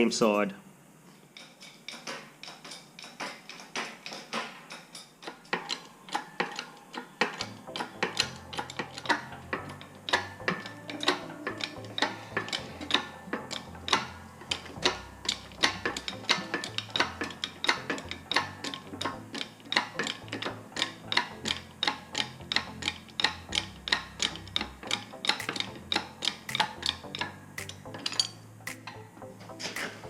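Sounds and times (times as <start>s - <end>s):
stepping bass line: 7.4s - 19.4s, 20.1s - 30.0s
clicking beat: 7.4s - 30.0s.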